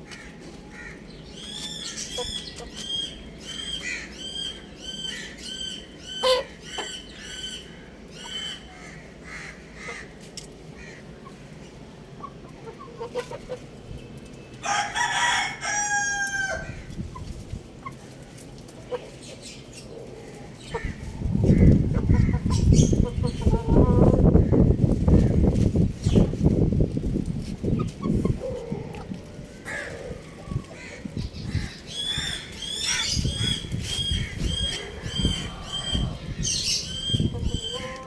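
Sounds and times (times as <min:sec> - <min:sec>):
chicks peeping: 0:00.1 - 0:10.3, 0:11.0 - 0:38.0
rooster crowing: 0:14.6 - 0:16.8.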